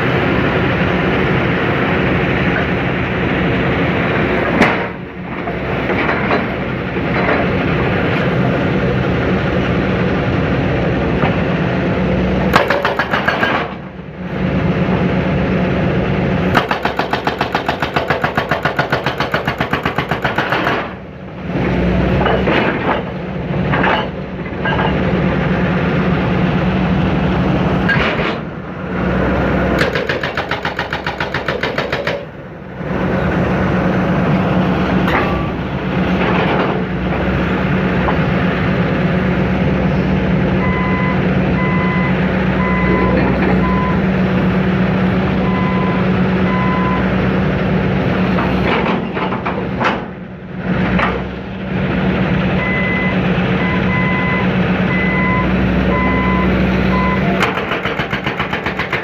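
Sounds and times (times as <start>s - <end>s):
excavator diesel engine under load: 0.0s - 59.0s
hydraulic breaker hammering concrete: 12.5s - 13.9s, 16.5s - 21.0s, 29.8s - 32.4s, 57.2s - 59.0s.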